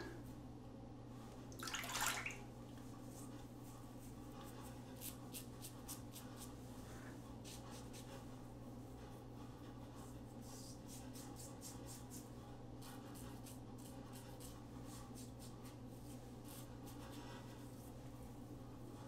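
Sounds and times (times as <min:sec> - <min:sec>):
steady low hum: 0:00.0 - 0:19.0
razor scraping stubble: 0:04.6 - 0:06.6.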